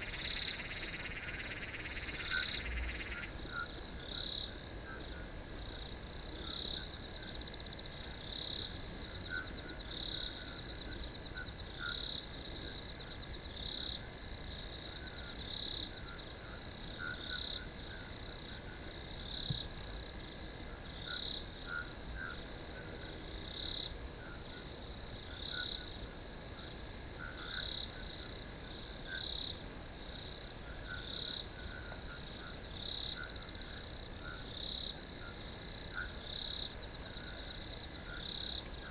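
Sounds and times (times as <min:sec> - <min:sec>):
crickets chirping: 0:00.0 - 0:38.9
faint low cricket trill: 0:00.0 - 0:38.9.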